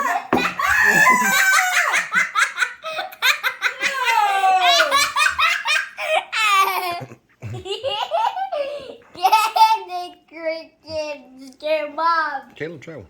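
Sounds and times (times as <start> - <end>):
high-pitched laughing: 0.0 - 10.0.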